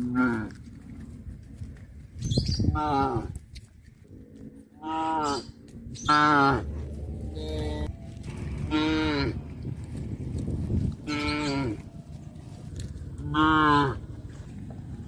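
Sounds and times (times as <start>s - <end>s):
cows mooing: 4.2s - 9.7s, 11.0s - 12.0s, 13.0s - 14.4s.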